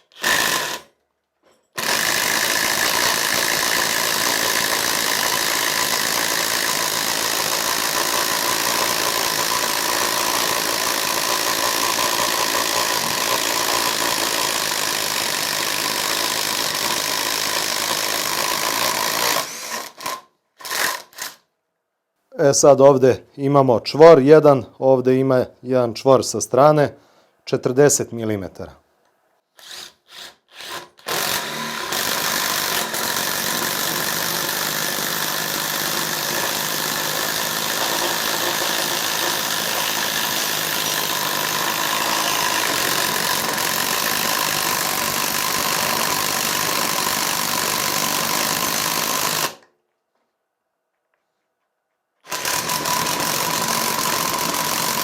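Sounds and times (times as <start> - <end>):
impact driver boring into wood: 0.0 - 1.0, 1.8 - 21.4, 29.6 - 49.7, 52.2 - 55.0.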